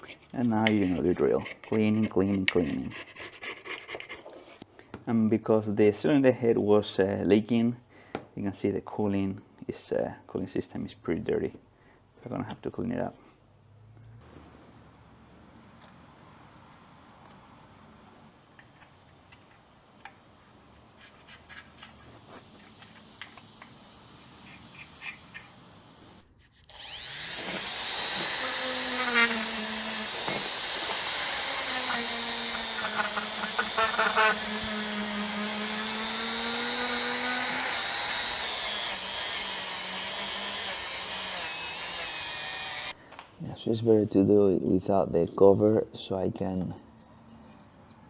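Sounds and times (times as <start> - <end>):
handheld power tool running: 26.6 - 43.0.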